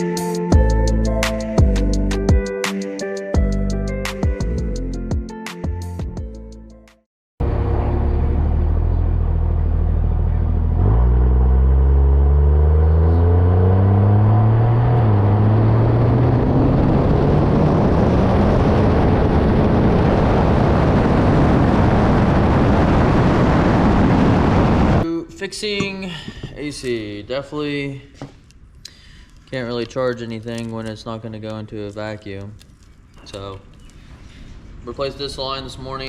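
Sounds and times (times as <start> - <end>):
tires spinning rough rushing: 7.4 - 25.0
truck engine accelerating: 7.4 - 25.0.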